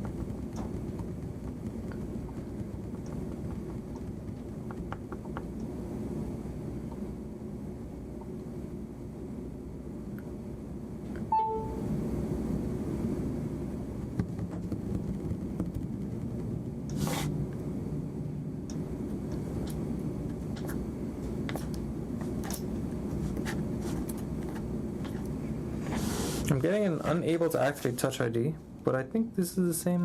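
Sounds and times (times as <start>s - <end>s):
low background rumble: 0.0s - 26.0s
falling electronic beep: 11.3s - 11.8s.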